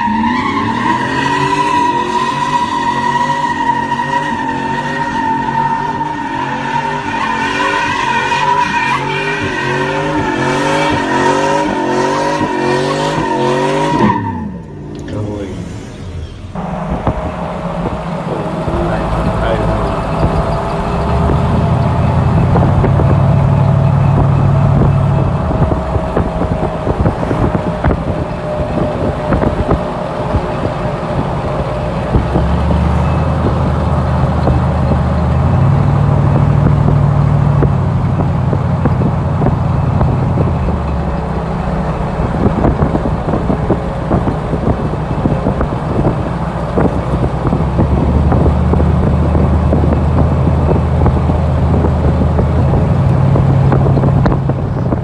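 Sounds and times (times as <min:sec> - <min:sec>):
exhaust crackles: 0:00.0 - 0:55.0
truck engine deep drone: 0:00.0 - 0:55.0.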